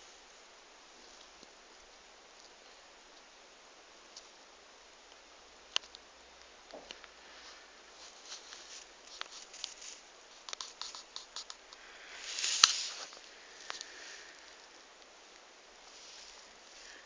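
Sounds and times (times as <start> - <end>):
rustling scrape: 7.4 - 14.4, 15.8 - 17.0.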